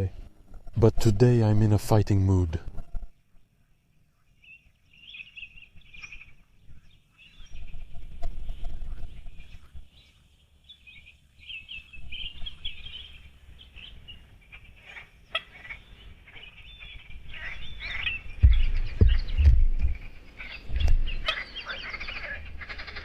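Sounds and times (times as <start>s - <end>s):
songbirds chirping and singing: 3.0s - 23.0s
low rumble: 17.8s - 21.3s.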